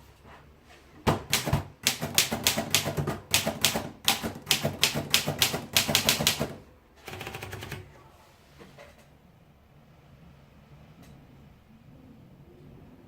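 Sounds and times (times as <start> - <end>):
typewriter keystrokes: 1.2 - 7.9
typewriter mechanism clicks: 1.3 - 6.6.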